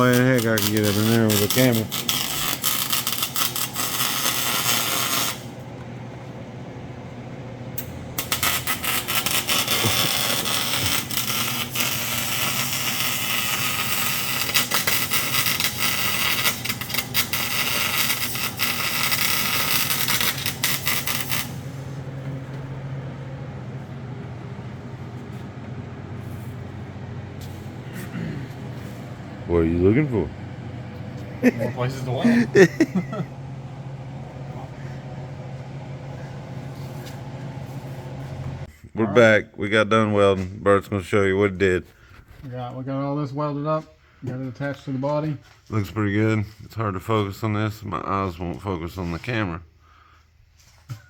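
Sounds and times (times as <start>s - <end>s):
welding arc crackling: 0.0s - 5.6s, 7.8s - 22.0s, 31.2s - 33.4s
low steady hum: 0.0s - 44.2s.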